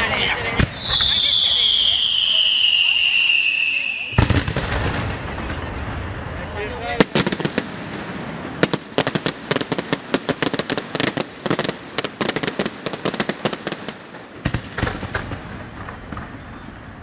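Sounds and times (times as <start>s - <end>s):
fireworks cracks and bangs: 0.5s - 17.0s
deep fireworks booms: 4.1s - 17.0s.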